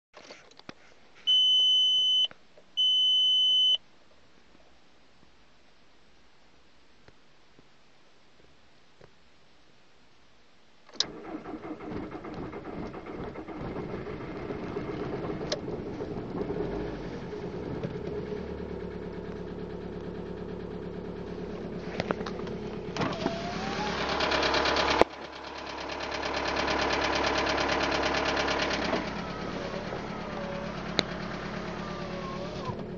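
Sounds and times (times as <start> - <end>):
diesel engine starting and idling: 10.9 - 32.9.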